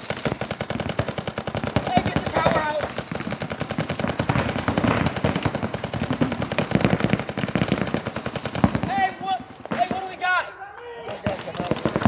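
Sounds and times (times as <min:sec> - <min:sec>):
paintball markers firing rapidly: 0:00.0 - 0:10.2, 0:11.0 - 0:12.0.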